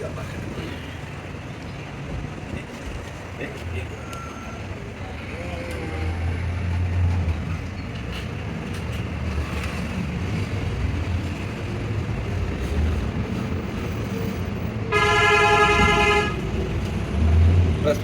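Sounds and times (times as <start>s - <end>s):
traffic rumble: 0.0s - 18.0s
vehicle horn blast: 14.9s - 16.4s.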